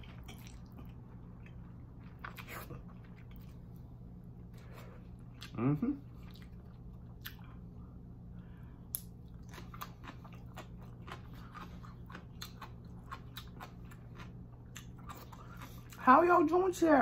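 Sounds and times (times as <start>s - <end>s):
chewing noodles: 0.0s - 3.7s, 9.0s - 16.0s.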